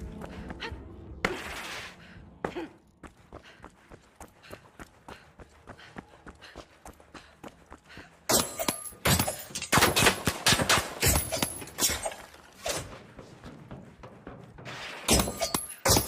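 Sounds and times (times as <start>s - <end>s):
swords clashing: 15.1s - 16.0s.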